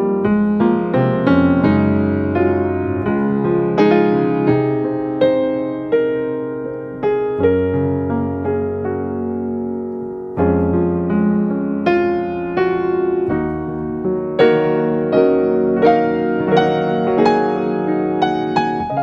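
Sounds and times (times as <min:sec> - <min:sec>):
piano single-note melody: 0:00.0 - 0:19.0.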